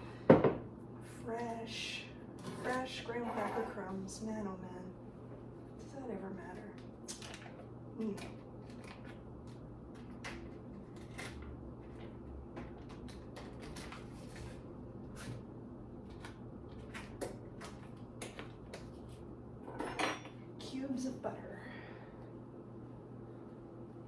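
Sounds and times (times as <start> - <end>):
steady low hum: 0.0 - 24.0
kitchen utensils clicking and scraping: 2.4 - 3.8.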